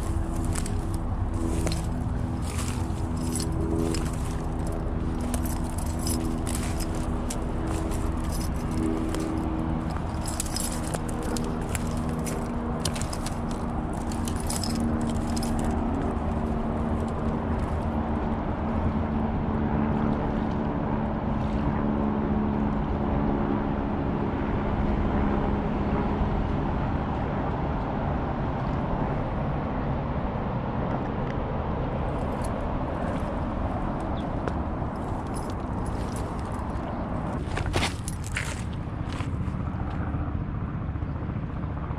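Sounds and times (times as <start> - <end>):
light clicking and rattling: 0.0 - 17.9
road traffic noise: 0.0 - 41.9
vehicle engine hum: 0.0 - 41.9.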